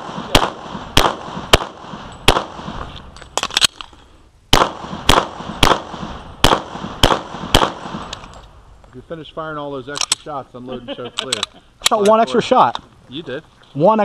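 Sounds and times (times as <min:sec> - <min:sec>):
pistol shots: 0:00.0 - 0:03.7, 0:04.5 - 0:08.3.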